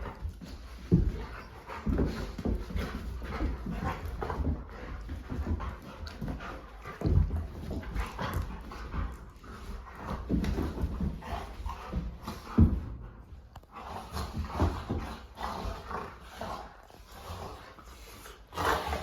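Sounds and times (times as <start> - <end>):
dogs panting: 0.0 - 19.0.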